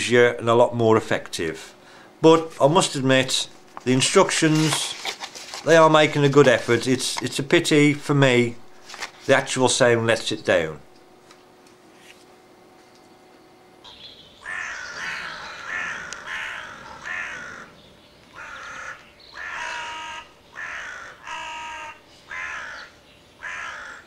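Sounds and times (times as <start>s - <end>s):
crow cawing: 14.4s - 24.0s.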